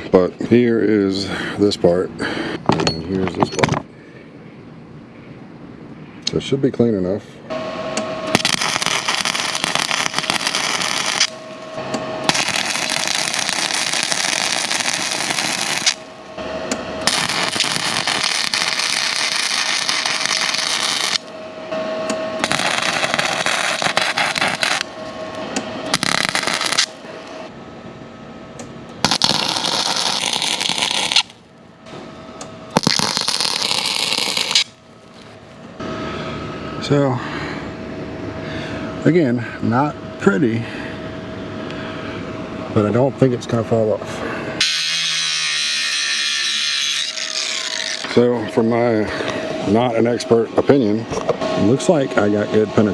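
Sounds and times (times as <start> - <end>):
welding arc crackling: 8.3 - 11.4, 12.2 - 16.1, 17.0 - 21.3, 22.4 - 25.0, 25.9 - 27.0, 29.0 - 31.4, 32.7 - 34.8.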